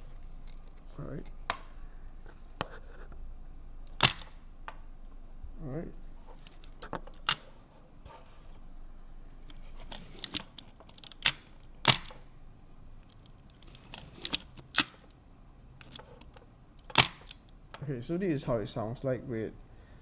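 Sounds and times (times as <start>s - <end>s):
camera shutter clicks: 3.9s - 4.4s, 9.9s - 12.2s, 16.9s - 17.4s.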